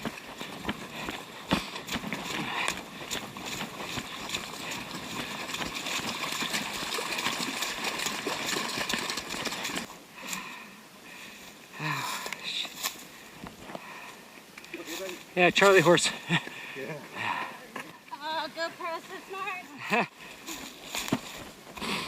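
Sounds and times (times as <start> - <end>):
splashing steps: 0.0 - 9.9
running footsteps on muddy trail: 0.0 - 22.0.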